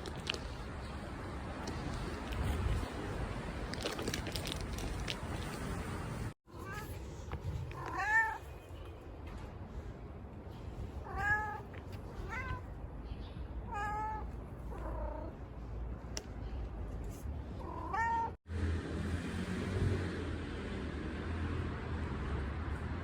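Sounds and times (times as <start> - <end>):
cat meowing: 7.7 - 8.5, 11.0 - 12.8, 13.7 - 15.4, 17.6 - 18.4.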